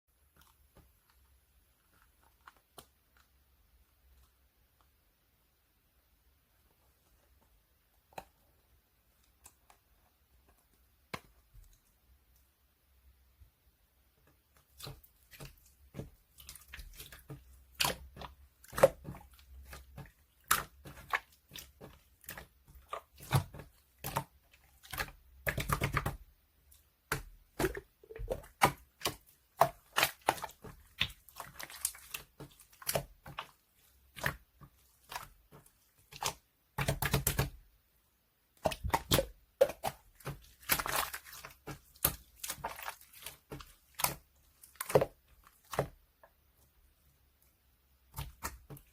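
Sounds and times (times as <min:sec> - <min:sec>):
sticky slime squelching: 0:00.2 - 0:05.0, 0:06.6 - 0:12.6, 0:13.9 - 0:37.8, 0:38.4 - 0:48.9
slime clicking and popping: 0:36.1 - 0:37.6.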